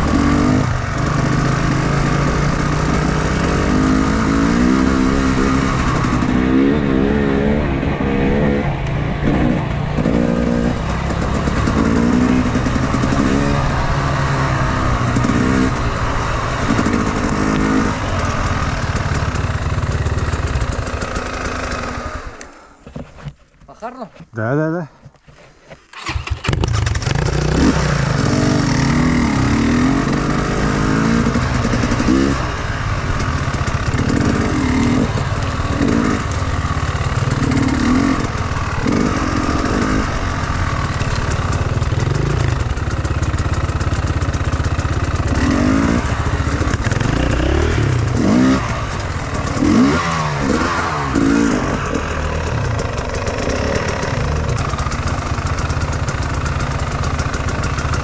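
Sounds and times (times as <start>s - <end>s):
motorcycle engine revving: 0.0s - 22.6s, 25.9s - 58.0s.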